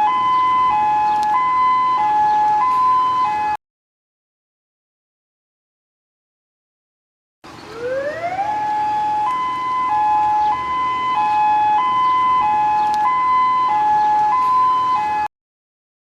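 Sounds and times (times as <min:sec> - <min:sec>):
electronic emergency alert alarm: 0:00.0 - 0:03.6, 0:07.8 - 0:15.3.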